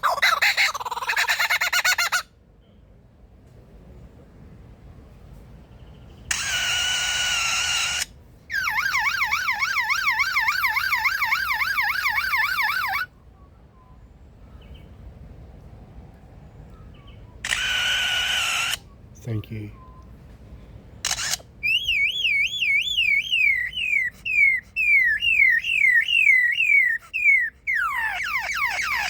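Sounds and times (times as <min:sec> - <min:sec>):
bird warbling siren call: 0:06.3 - 0:13.1, 0:21.1 - 0:29.0.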